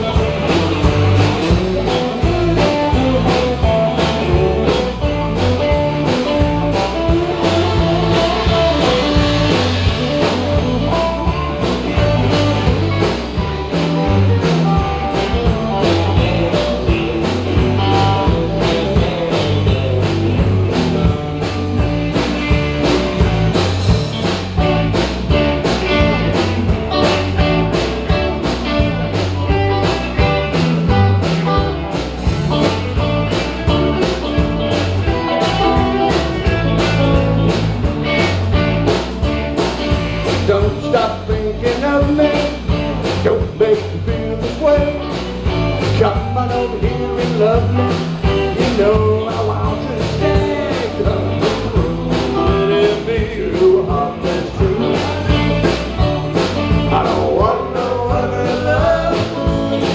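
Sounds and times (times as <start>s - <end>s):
electric guitar: 0.0s - 59.9s
rock and roll band playing: 0.0s - 59.9s
steady drum beat: 0.0s - 59.9s.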